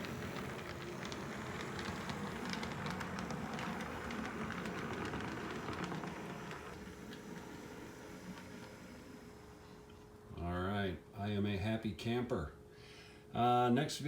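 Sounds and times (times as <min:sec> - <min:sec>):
model train rumbling on track: 0:00.0 - 0:09.6.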